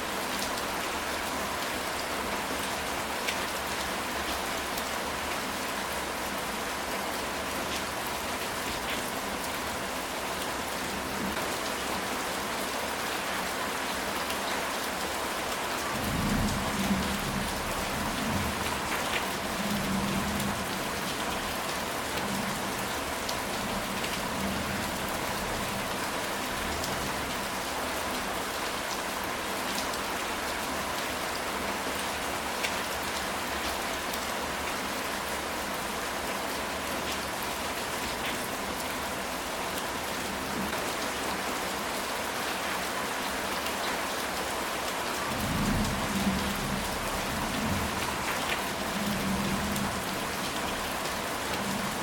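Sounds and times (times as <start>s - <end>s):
rain on a tile roof: 0.0s - 52.0s.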